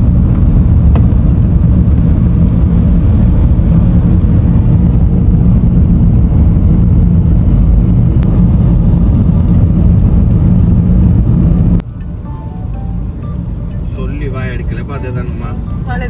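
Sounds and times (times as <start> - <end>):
car interior road and engine rumble: 0.0 - 16.0.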